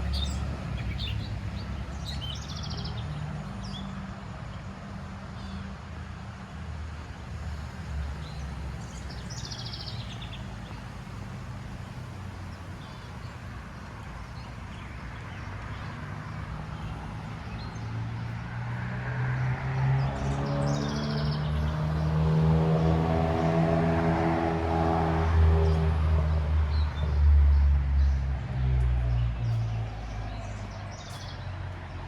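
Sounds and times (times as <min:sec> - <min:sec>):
low traffic rumble: 0:00.0 - 0:32.0
vehicle approaching: 0:06.8 - 0:32.0.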